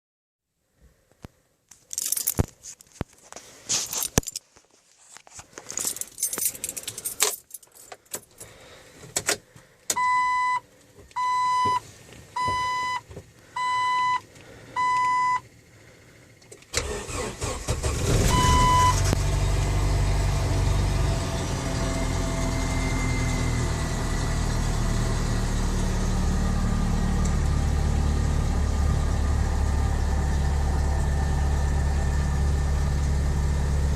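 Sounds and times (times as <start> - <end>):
keys jangling: 1.8 - 2.9, 3.8 - 4.4, 5.7 - 8.4
car engine idling: 15.4 - 33.9
car engine cranking: 16.4 - 33.5.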